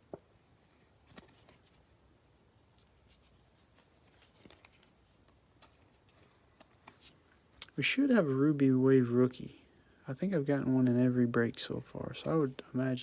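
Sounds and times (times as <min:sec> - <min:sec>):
trading cards being handled: 0:01.0 - 0:02.0, 0:02.6 - 0:07.8.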